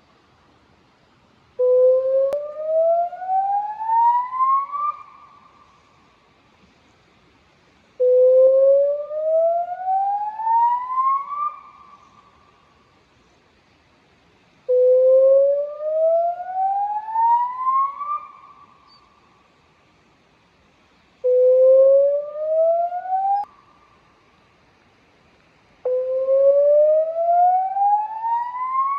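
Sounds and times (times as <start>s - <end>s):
warning siren rising whoops: 26.2s - 28.9s.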